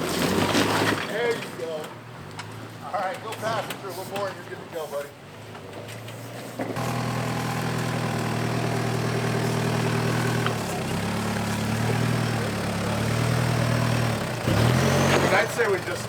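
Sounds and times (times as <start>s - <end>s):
truck engine revving: 6.8s - 16.0s.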